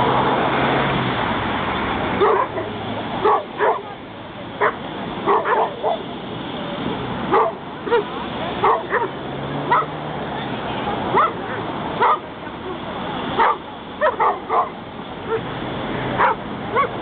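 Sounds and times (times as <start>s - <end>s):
dog barking: 2.2s - 3.9s, 4.6s - 6.0s, 7.3s - 10.0s, 11.1s - 12.3s, 13.4s - 15.5s, 16.2s - 17.0s.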